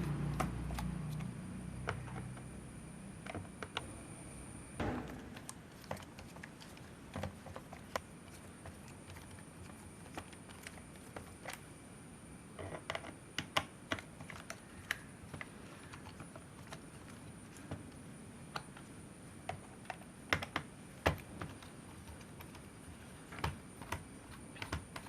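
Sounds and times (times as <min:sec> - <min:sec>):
faint high-pitched whine: 0:00.0 - 0:25.0.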